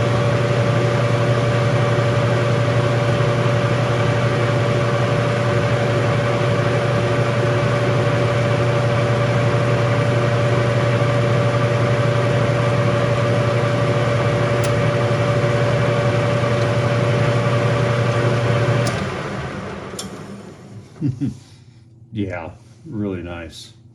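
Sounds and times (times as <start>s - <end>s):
lathe winding down: 0.0s - 20.9s
metal lathe motor humming: 0.0s - 20.9s.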